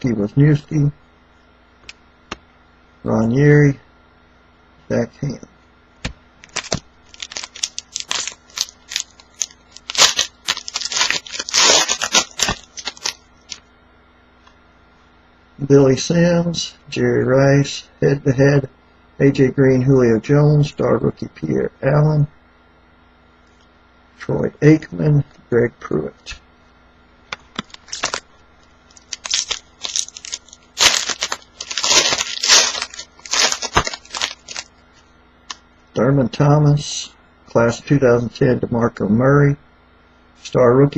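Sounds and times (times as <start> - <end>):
cards clicking and rustling: 6.0 - 13.6, 27.3 - 28.2, 28.9 - 34.7
wrapper crinkling and tearing: 6.4 - 13.6, 27.6 - 28.3, 28.9 - 34.7.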